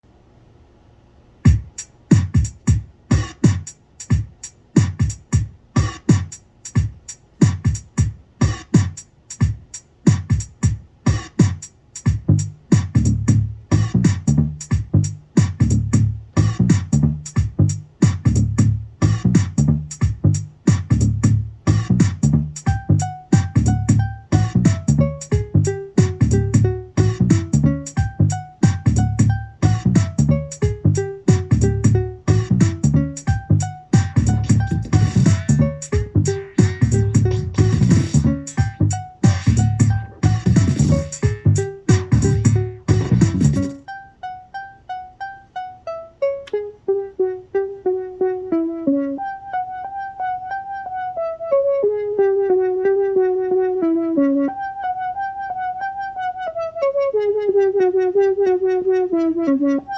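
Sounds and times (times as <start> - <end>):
drum machine beat: 1.4 - 43.8
synth bass line: 12.3 - 43.8
synth melody with sliding pitches: 22.6 - 59.9.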